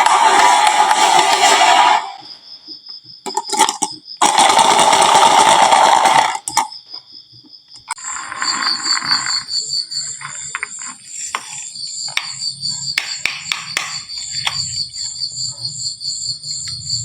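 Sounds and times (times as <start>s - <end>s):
marbles rolling down wooden track: 0.0s - 2.2s, 3.3s - 6.7s, 7.9s - 9.5s
insects chirping: 0.0s - 17.0s.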